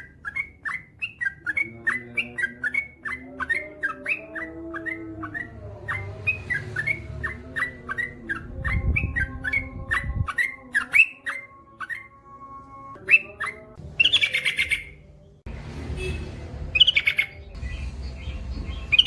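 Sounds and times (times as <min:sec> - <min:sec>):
bird whistling song: 0:00.0 - 0:15.0, 0:16.0 - 0:19.0
low rumble: 0:05.6 - 0:10.3, 0:15.0 - 0:19.0.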